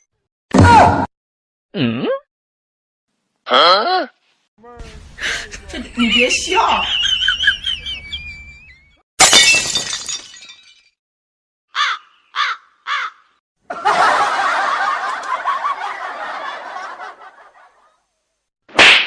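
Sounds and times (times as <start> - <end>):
laugh track crowd laughter: 5.2 - 8.9, 13.6 - 18.1.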